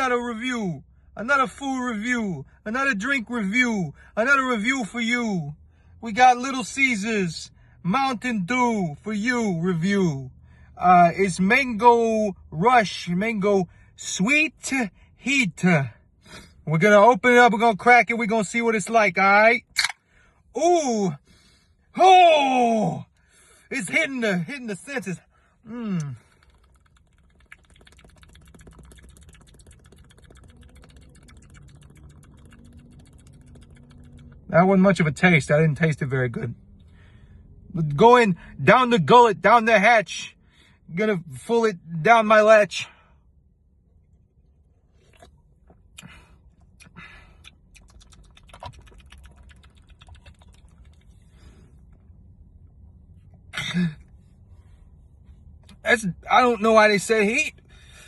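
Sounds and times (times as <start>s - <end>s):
mouth clicks and swallowing: 25.8s - 34.5s, 44.7s - 52.3s
person slurping sips: 26.0s - 34.4s
soda fizzing: 26.2s - 34.4s, 47.8s - 51.2s.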